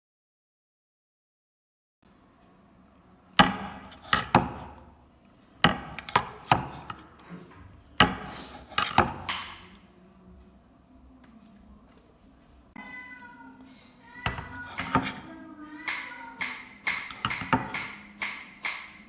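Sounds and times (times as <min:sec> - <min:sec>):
sharp knocks on wood: 0:15.9 - 0:18.9.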